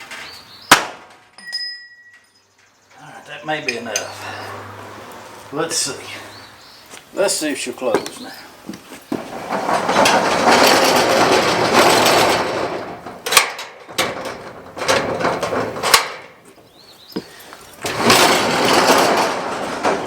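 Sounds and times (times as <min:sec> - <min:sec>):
door scraping along track: 0:08.8 - 0:16.4, 0:17.8 - 0:20.0.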